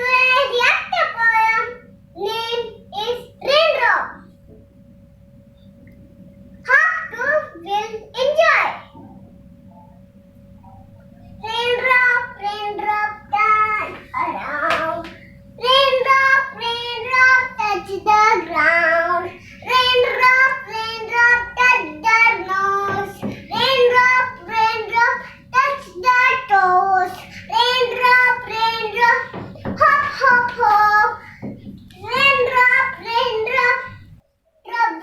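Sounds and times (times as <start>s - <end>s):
child singing: 11.4s - 31.3s, 32.0s - 34.0s, 34.6s - 35.0s.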